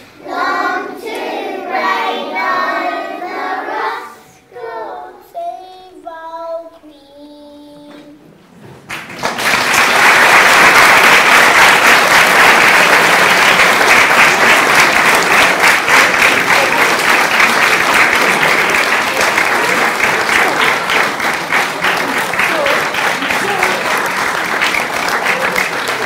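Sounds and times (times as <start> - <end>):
audience applauding: 8.9 - 26.0.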